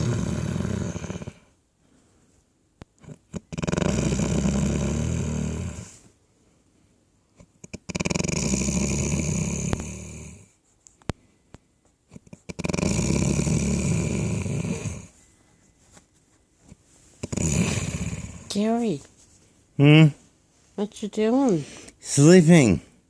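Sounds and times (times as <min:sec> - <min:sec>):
loud snoring: 0:00.0 - 0:01.5, 0:03.0 - 0:06.0, 0:07.6 - 0:10.5, 0:12.5 - 0:15.1, 0:17.2 - 0:18.5.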